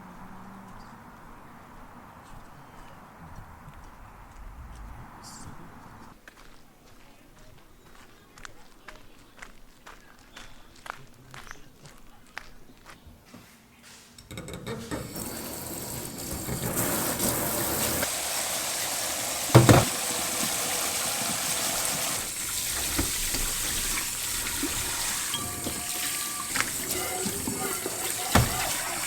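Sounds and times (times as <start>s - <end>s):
water running: 14.7s - 29.0s.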